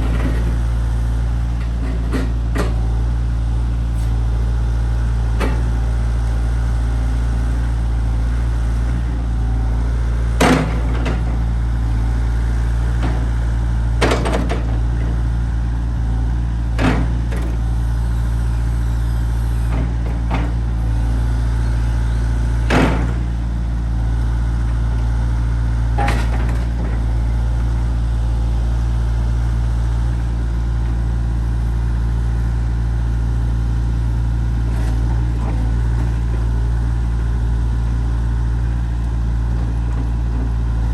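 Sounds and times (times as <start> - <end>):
diesel engine idling: 0.0 - 26.0.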